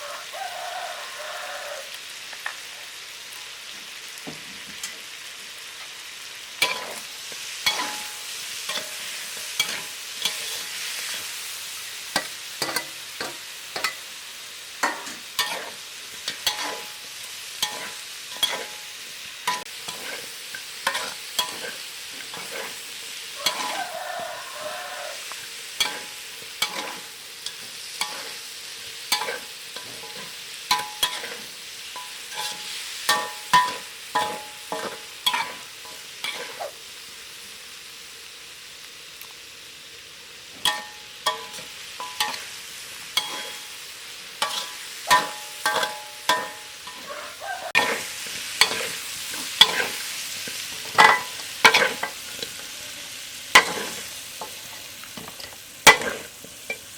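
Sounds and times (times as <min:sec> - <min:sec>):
food sizzling in hot oil: 0:00.0 - 0:56.9
spatula scraping and clanking on pan: 0:06.6 - 0:14.2, 0:14.8 - 0:36.8, 0:40.6 - 0:52.8, 0:53.5 - 0:56.9.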